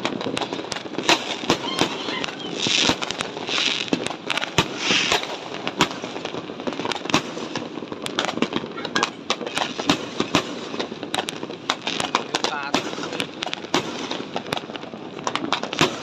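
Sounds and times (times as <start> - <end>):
firework hiss: 0.0 - 16.0
fireworks bangs and pops: 0.0 - 16.0.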